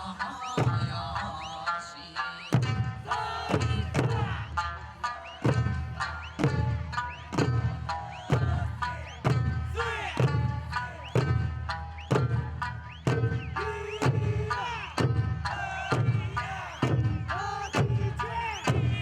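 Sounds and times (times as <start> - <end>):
music with heavy drum: 0.6 - 1.2, 2.6 - 19.0.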